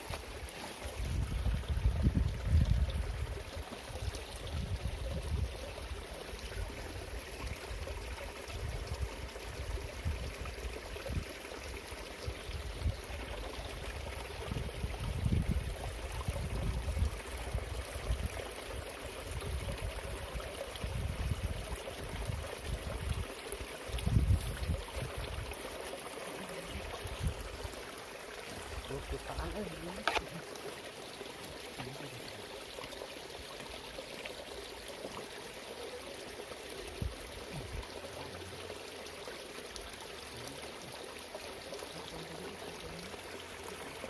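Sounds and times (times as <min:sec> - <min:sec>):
water rushing in a ditch: 0:00.0 - 0:44.0
wind buffeting microphone: 0:01.0 - 0:03.4, 0:14.4 - 0:18.4, 0:20.8 - 0:23.2, 0:24.0 - 0:25.5.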